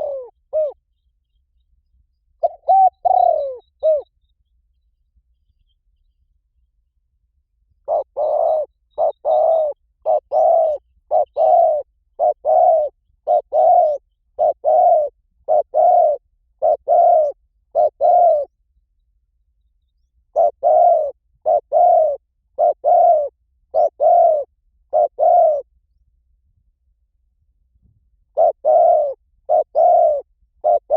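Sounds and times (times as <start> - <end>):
dove cooing: 0.0 - 0.8, 2.4 - 4.1, 7.8 - 18.5, 20.3 - 25.7, 28.3 - 30.9.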